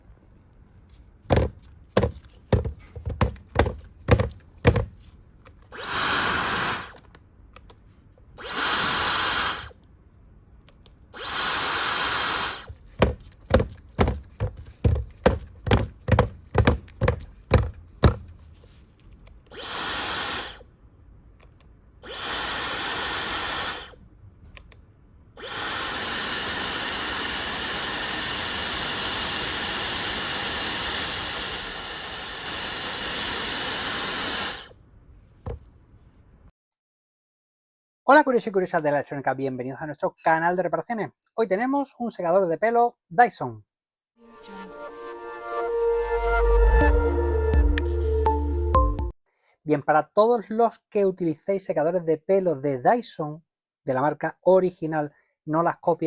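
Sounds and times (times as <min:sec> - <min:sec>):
hair dryer blowing: 0:08.4 - 0:09.7, 0:11.2 - 0:12.7, 0:19.5 - 0:20.6, 0:22.0 - 0:24.0, 0:25.4 - 0:34.7.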